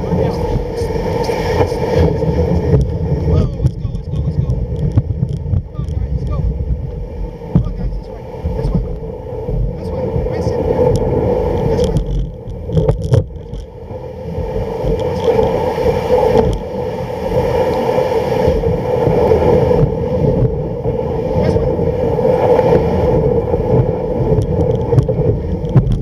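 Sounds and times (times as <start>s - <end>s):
sled runners scraping over snow: 0.0s - 26.0s
sharp knocks: 6.9s - 7.9s.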